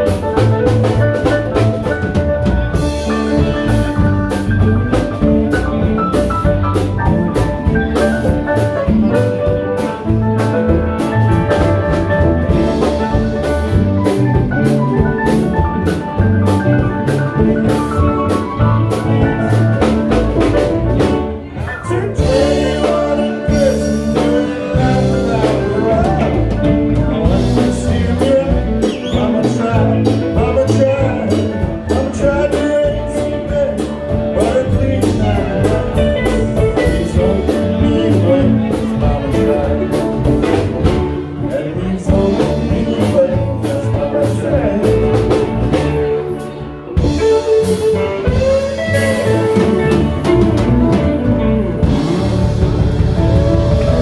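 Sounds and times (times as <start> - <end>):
live band playing: 0.0 - 54.0
regular drum beat: 0.0 - 54.0.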